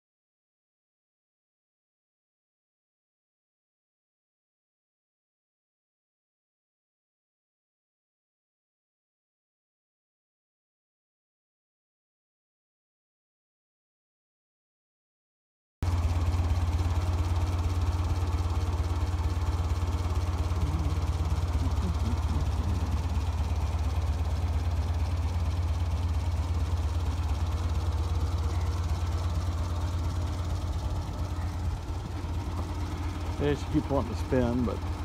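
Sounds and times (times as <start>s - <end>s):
engine idling with pulsing note: 15.8s - 35.0s.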